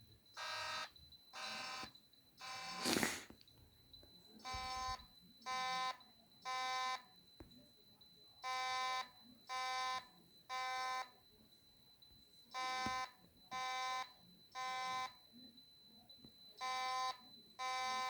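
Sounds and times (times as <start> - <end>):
fire alarm horn blasts: 4.4 - 7.1, 8.4 - 11.2, 12.5 - 15.3, 16.5 - 18.0.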